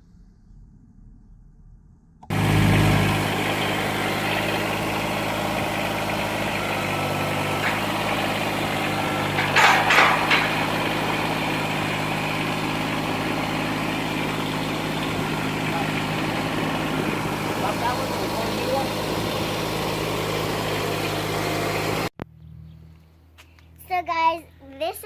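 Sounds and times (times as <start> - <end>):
engine idling: 2.3 - 22.2.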